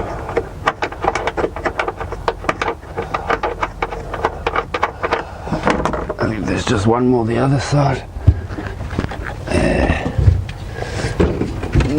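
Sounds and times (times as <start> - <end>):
hand tools clicking and knocking: 0.0 - 6.8.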